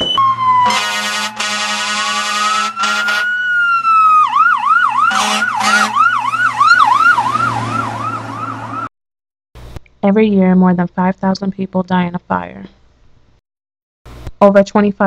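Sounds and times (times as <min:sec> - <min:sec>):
loud horn blasts: 0:00.0 - 0:03.3, 0:05.1 - 0:06.0
emergency vehicle siren: 0:00.0 - 0:08.9.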